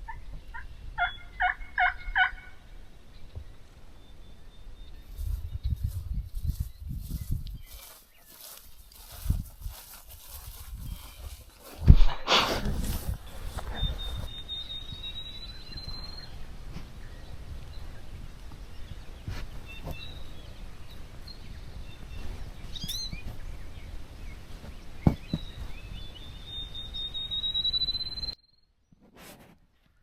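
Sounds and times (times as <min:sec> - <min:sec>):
bird chirps: 0:00.0 - 0:09.2, 0:09.8 - 0:11.4, 0:12.9 - 0:28.9
bird whistling: 0:13.3 - 0:16.4, 0:25.9 - 0:28.4.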